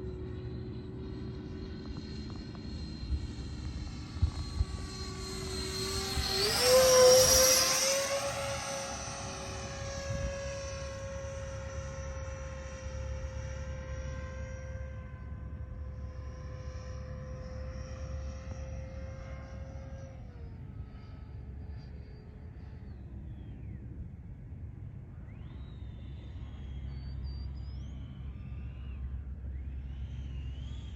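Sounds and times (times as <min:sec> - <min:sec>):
wind rumble on microphone: 0:00.0 - 0:17.2
model jet fan whining: 0:00.0 - 0:30.9.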